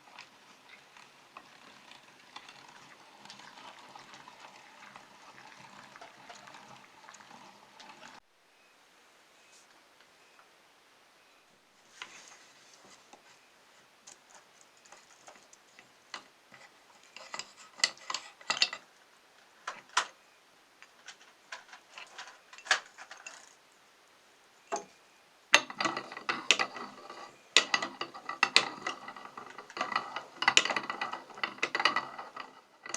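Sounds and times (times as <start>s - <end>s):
meat grinder crackling: 0.0s - 8.2s.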